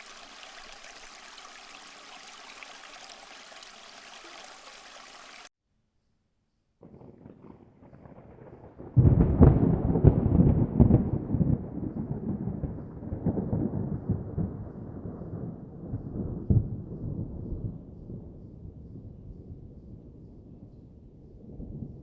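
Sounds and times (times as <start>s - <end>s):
thunder crack: 6.8s - 17.8s
rolling thunder rumble: 6.8s - 22.0s.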